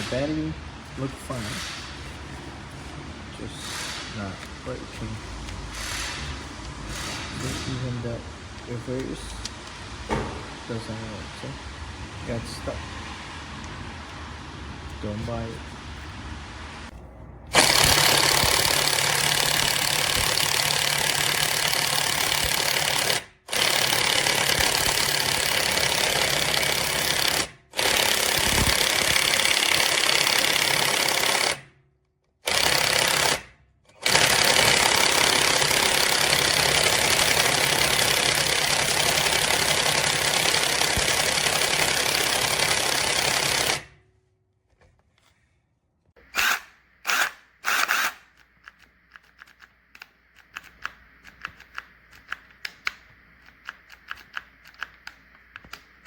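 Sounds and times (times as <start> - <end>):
impact wrench hammering: 3.6 - 4.6, 5.7 - 7.9, 10.1 - 10.6, 17.5 - 31.6, 34.0 - 43.8.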